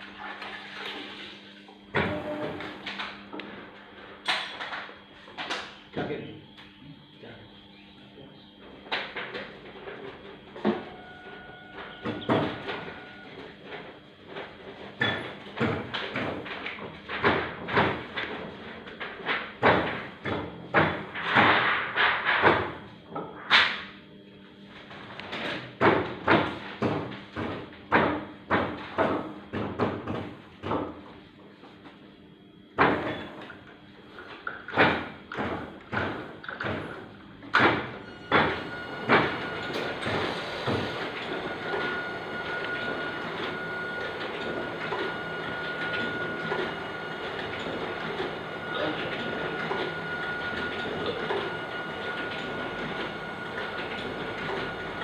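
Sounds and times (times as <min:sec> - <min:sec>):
printing press clacking: 0:34.6 - 0:55.0.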